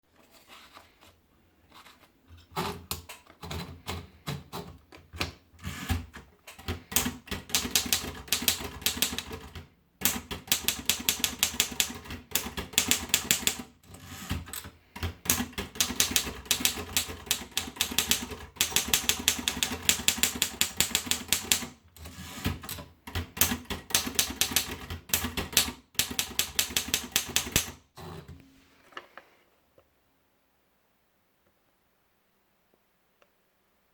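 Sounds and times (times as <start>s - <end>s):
manual typewriter key strikes: 6.6s - 13.6s, 15.0s - 21.7s, 22.5s - 27.8s.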